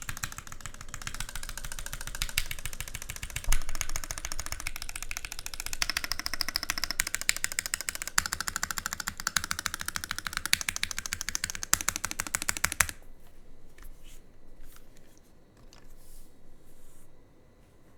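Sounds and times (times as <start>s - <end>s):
fast mechanical keyboard typing: 0.0s - 13.0s.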